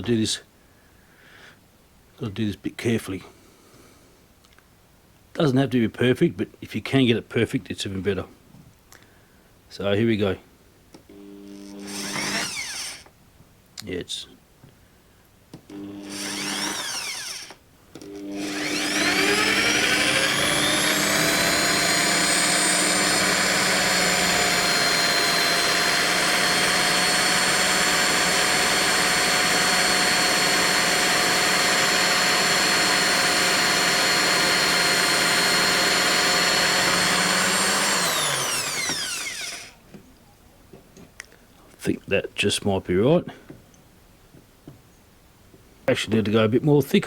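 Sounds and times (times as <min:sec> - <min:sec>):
electric drill whining: 0:11.2 - 0:13.1, 0:15.7 - 0:39.8.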